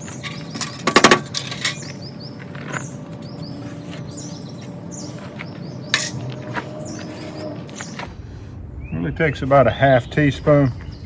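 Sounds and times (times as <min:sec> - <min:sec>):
small birds chirping: 0:00.0 - 0:08.1.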